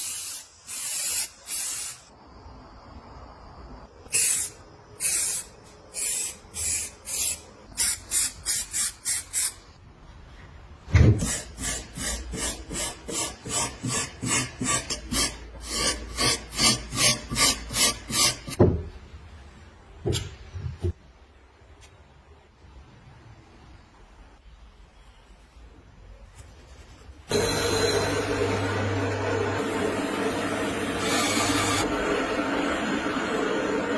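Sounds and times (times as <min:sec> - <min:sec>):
hand tool rasping strokes: 0:11.2 - 0:18.6.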